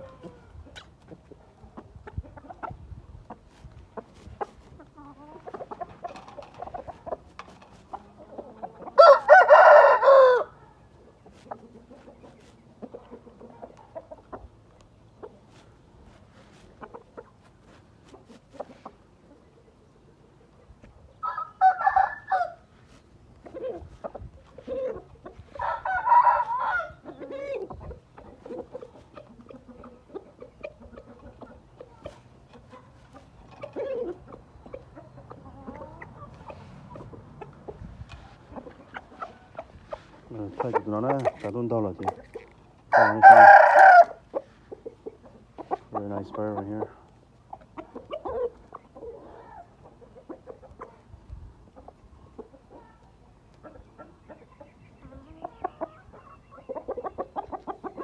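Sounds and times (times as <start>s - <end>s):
chickens clucking: 0.0s - 58.0s
rooster crowing: 9.0s - 10.7s, 21.2s - 22.6s, 25.6s - 27.0s, 42.9s - 44.2s.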